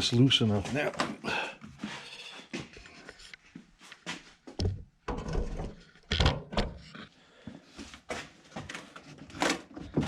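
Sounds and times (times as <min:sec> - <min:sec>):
metal car parts clunking: 0:05.0 - 0:06.8.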